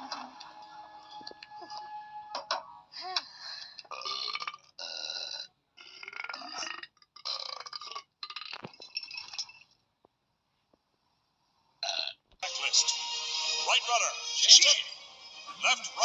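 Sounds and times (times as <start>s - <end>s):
high-pitched cartoon burps: 3.9s - 9.6s, 11.8s - 12.2s.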